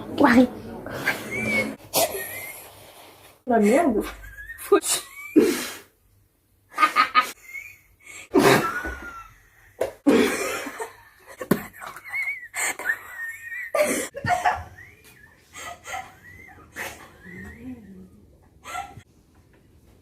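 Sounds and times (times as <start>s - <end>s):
women wheezing laughter: 6.8s - 17.5s, 18.6s - 19.0s.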